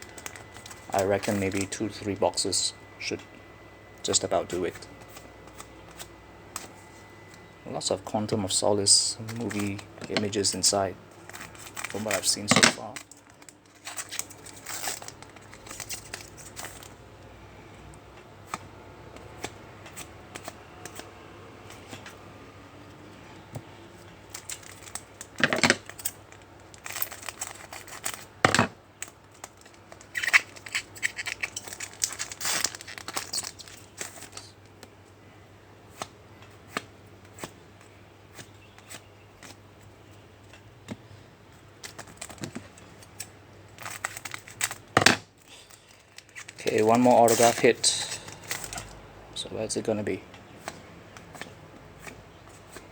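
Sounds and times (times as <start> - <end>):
card pack wrappers tearing and crinkling: 0.0 - 2.3, 8.6 - 17.0, 24.2 - 28.4, 29.0 - 34.9, 41.8 - 49.0.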